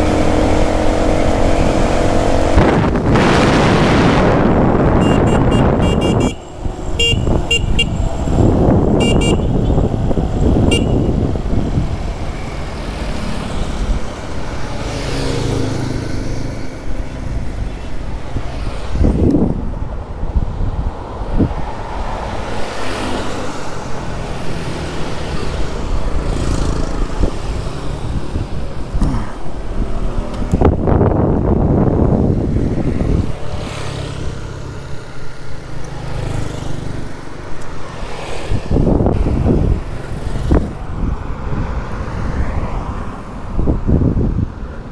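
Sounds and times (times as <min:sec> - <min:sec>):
motorbike engine and road rumble: 0:00.0 - 0:44.9
vehicle horns honking: 0:04.8 - 0:11.6.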